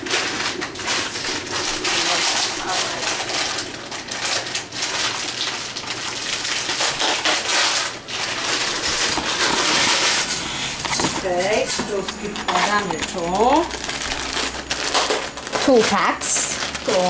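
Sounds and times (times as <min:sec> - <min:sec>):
food sizzling in a pan: 0:00.1 - 0:05.9.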